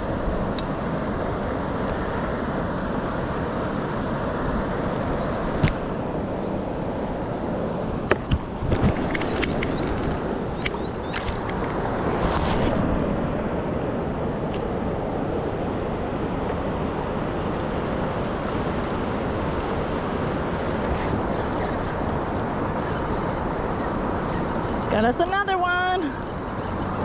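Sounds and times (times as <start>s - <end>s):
wind on microphone: 0.0s - 27.0s.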